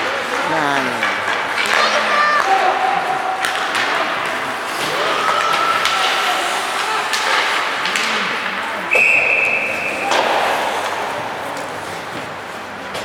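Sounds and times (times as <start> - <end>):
echoing arena hum: 0.0 - 13.0
hockey sticks and puck clacking: 0.0 - 13.0
referee's whistle: 8.9 - 10.2.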